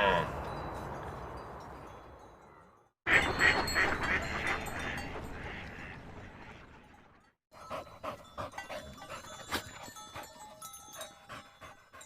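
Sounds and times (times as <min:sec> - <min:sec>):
dog panting: 0:07.6 - 0:12.0.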